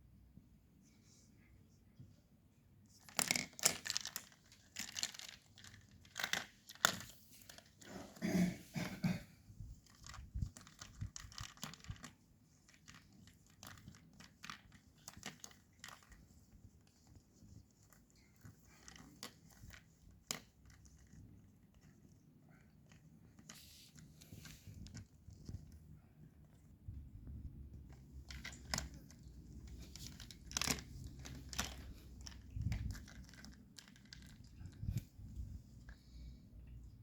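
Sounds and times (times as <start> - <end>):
kitten batting crinkly object: 2.9 - 8.4, 9.5 - 25.8, 27.7 - 36.2
scratches and clicks: 27.9 - 36.0.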